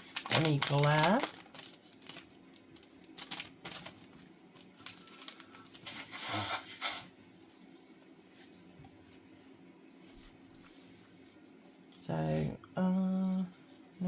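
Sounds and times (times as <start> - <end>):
plastic packaging crinkling: 0.0 - 6.1.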